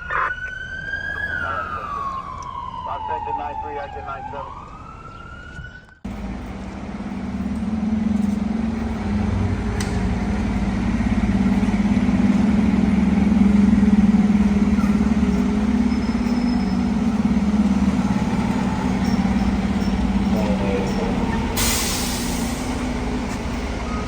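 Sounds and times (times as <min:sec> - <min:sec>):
fire engine running: 0:00.0 - 0:24.0.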